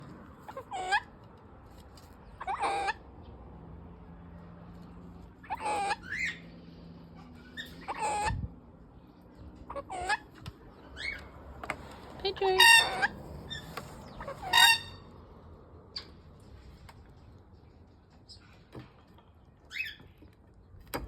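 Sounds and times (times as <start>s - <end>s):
cockatoo calling: 12.4s - 15.1s.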